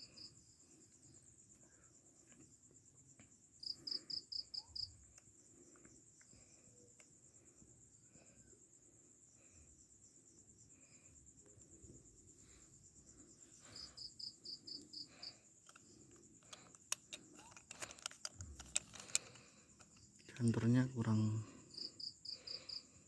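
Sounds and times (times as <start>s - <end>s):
crickets trilling: 0.0s - 23.0s
sharp clicks: 15.6s - 20.6s.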